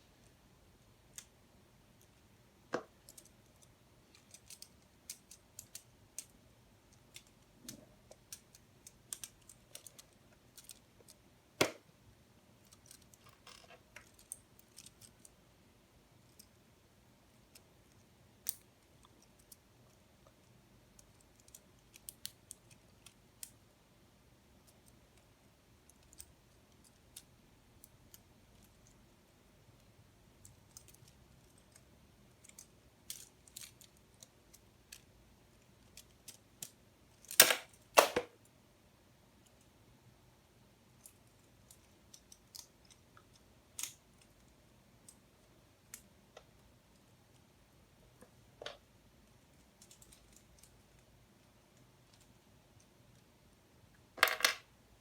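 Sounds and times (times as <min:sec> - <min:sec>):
plastic pieces clicking together: 0:02.7 - 0:11.8, 0:12.6 - 0:15.3, 0:41.0 - 0:44.4.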